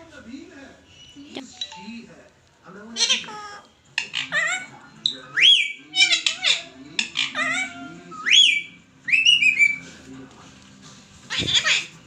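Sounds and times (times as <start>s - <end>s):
parakeet chattering: 2.9s - 9.8s, 11.3s - 12.0s
parakeet whistling: 4.1s - 9.8s.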